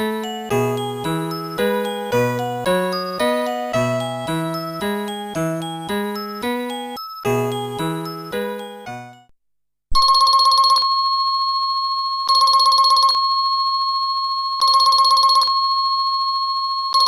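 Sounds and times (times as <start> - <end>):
electronic telephone ring tone: 10.0 - 17.0.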